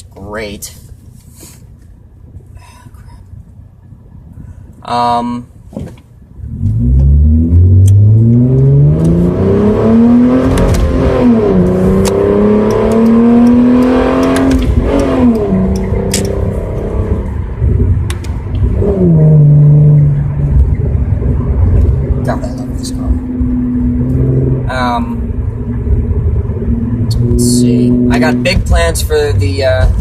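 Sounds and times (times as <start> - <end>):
car engine accelerating: 6.4 - 30.0.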